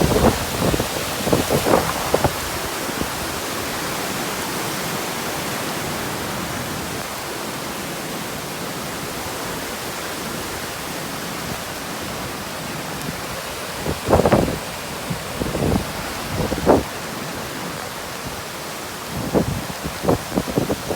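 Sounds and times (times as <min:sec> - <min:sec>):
wind buffeting microphone: 0:00.0 - 0:03.7, 0:13.0 - 0:17.0, 0:19.1 - 0:20.9
heavy rain and wind hiss: 0:00.0 - 0:20.9.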